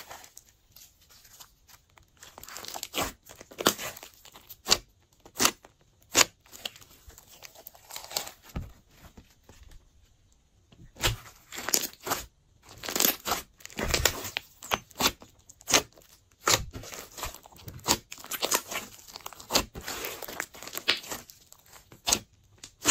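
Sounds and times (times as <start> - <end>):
slime popping and crackling: 11.0 - 22.9.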